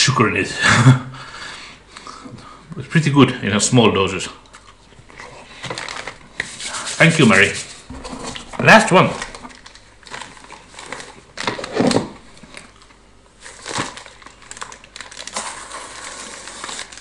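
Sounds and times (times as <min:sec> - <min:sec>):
packaging crinkling: 0:04.6 - 0:17.0.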